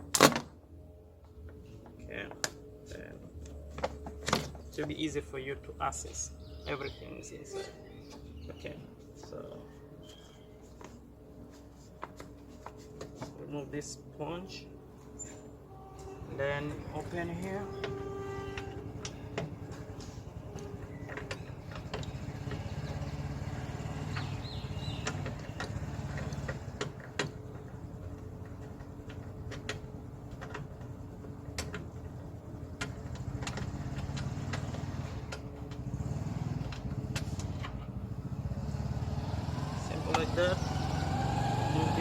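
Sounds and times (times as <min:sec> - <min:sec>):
low traffic rumble: 0:00.0 - 0:42.0.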